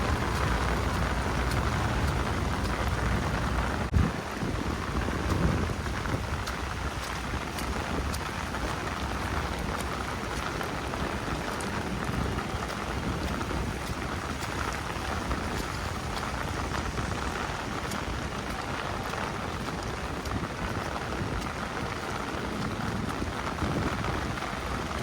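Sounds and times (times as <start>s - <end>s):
rain falling on street: 0.0s - 25.0s
raindrops ticking close by: 0.0s - 25.0s.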